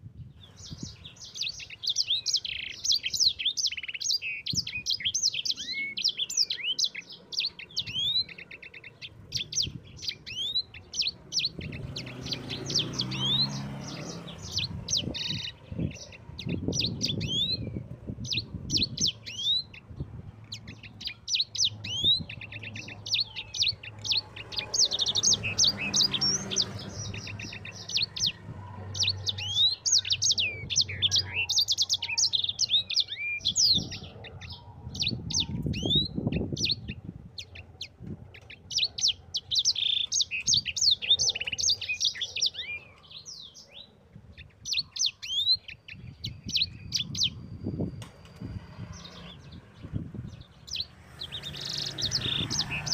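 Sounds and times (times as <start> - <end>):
songbird chirps and trills: 0.0 - 52.9.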